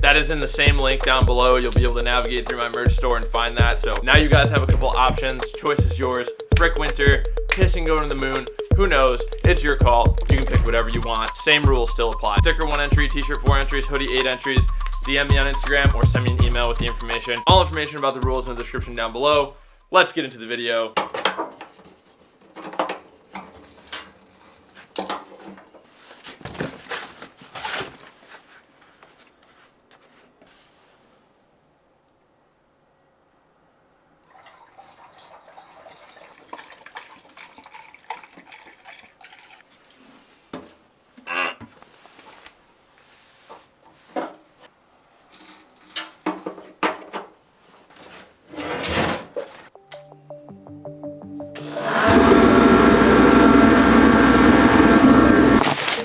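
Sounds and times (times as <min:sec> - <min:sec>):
tools and parts clunking: 0:21.0 - 0:27.1, 0:45.3 - 0:49.6
loud scraping rush: 0:51.6 - 0:56.0.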